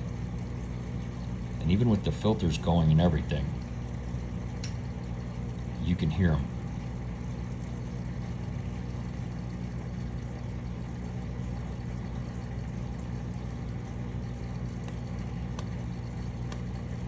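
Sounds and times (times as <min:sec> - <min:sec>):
aquarium filter hum: 0:00.0 - 0:17.0
faint clicks from fish: 0:04.5 - 0:04.9, 0:14.6 - 0:16.9.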